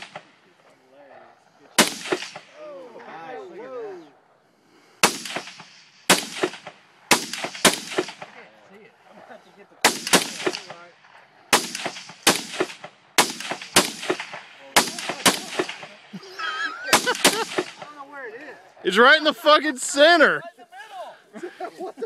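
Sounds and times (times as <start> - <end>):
gunshots echoing: 0.0 - 0.5, 1.7 - 3.2, 5.0 - 8.9, 9.8 - 16.1, 16.8 - 18.0.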